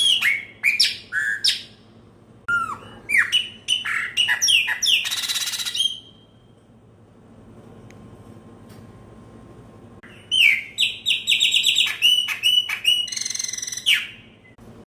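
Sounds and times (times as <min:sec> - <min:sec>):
blackbird singing: 0:00.0 - 0:01.8, 0:02.5 - 0:06.3, 0:10.0 - 0:14.6.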